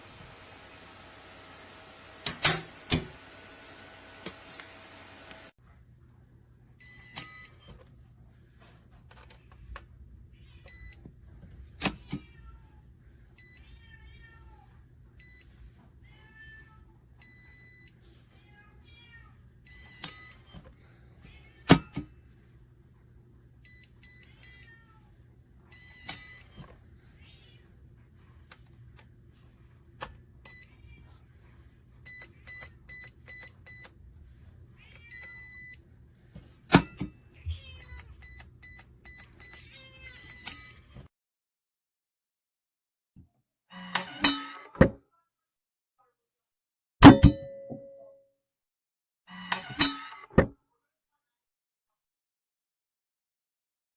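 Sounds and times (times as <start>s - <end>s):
sharp clicks or knocks: 2.2s - 3.2s, 36.7s - 37.1s
cat meowing: 13.4s - 14.7s, 37.4s - 38.3s
short electronic keypad beeps: 19.7s - 20.5s, 32.1s - 33.9s, 37.8s - 40.8s.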